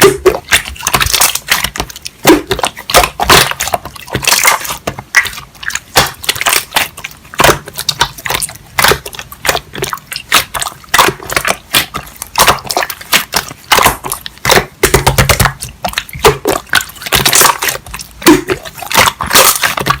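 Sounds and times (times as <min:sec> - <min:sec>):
slime squeezed with sticky pops: 0:00.0 - 0:20.0.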